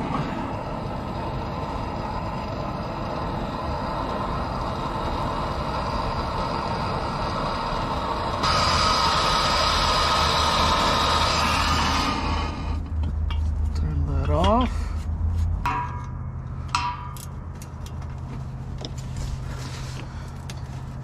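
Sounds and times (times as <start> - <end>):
gas torch hissing: 0.0 - 13.0
low hum: 0.0 - 21.0.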